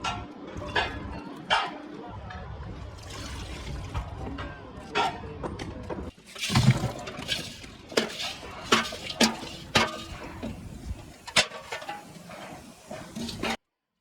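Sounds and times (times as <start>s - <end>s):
metal clattering being handled: 6.2s - 13.6s
metal objects clanking: 6.2s - 13.6s.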